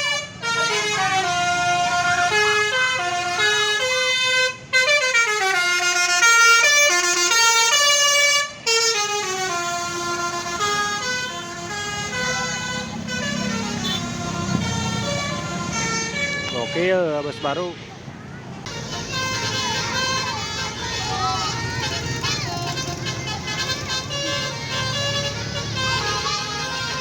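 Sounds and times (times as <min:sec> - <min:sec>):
musical air horn melody: 0:00.0 - 0:17.1, 0:18.7 - 0:27.0
bus engine rumble: 0:00.0 - 0:27.0.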